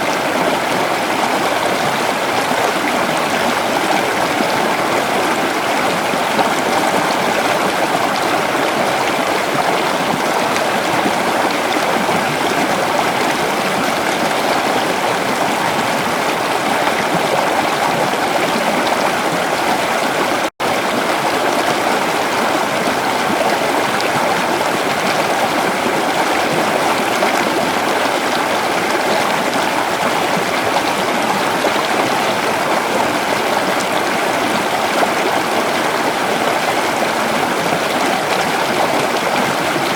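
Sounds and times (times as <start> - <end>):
river water flowing: 0.0 - 39.9.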